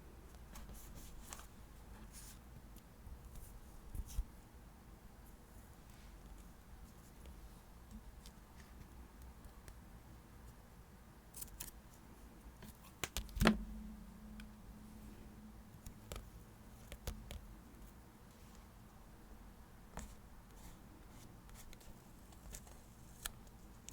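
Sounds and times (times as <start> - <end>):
paper handling clicks and taps: 12.6 - 13.6.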